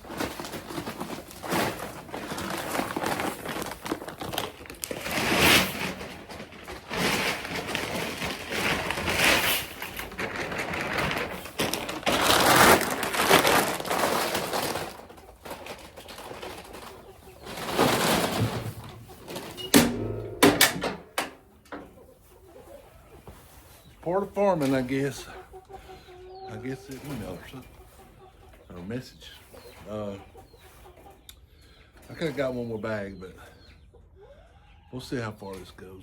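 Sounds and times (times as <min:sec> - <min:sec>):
sharp knocks: 0:19.7 - 0:21.4.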